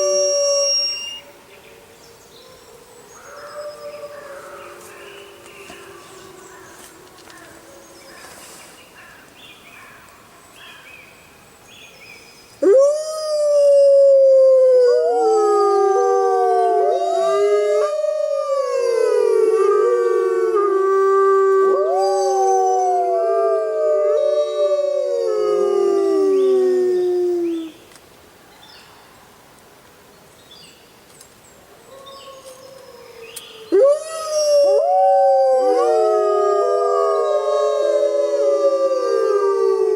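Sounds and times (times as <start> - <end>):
wolves howling in chorus: 2.3 - 8.1, 12.6 - 27.7, 31.9 - 39.9.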